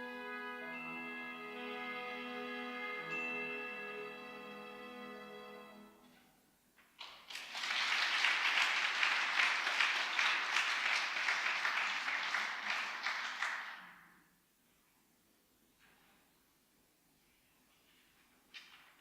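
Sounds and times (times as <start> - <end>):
congregation applauding: 7.0 - 14.1.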